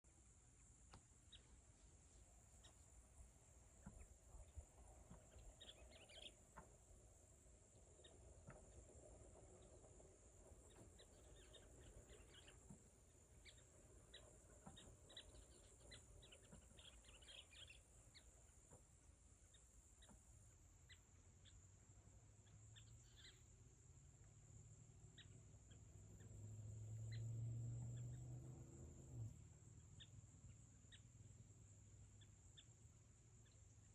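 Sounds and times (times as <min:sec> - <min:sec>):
short bird chirps: 0:05.2 - 0:06.5.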